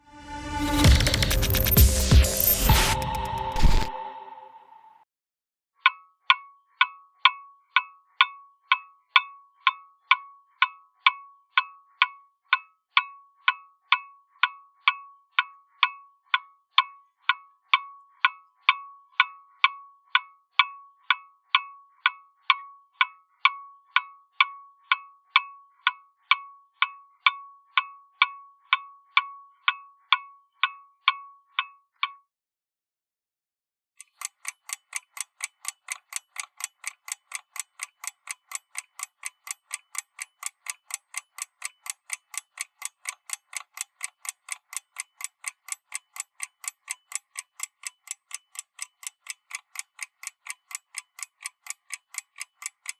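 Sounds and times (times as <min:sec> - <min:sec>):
clock ticking: 0:00.3 - 0:04.2, 0:34.0 - 0:52.9.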